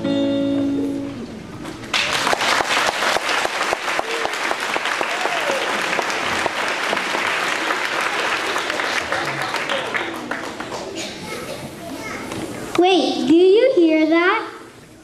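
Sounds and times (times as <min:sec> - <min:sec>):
audience applauding: 0:01.9 - 0:11.3.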